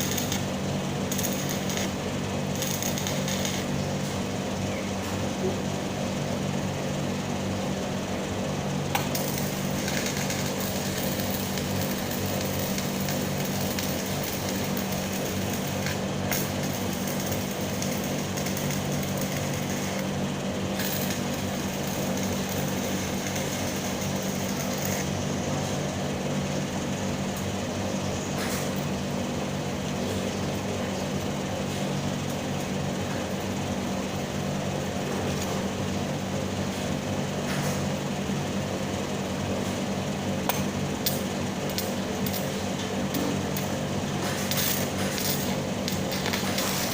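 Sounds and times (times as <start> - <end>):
welding arc crackling: 0.0 - 4.3, 8.9 - 25.2, 44.4 - 46.9.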